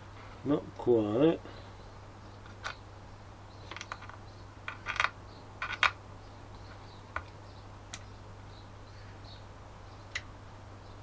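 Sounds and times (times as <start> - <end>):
low steady hum: 0.0 - 11.0
small hard objects clicking: 3.7 - 6.0.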